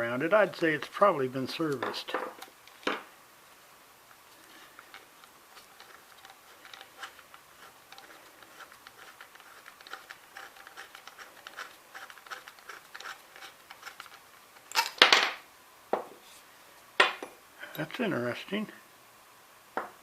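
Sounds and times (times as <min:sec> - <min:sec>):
light metal clicks and scrapes: 0:04.4 - 0:14.8.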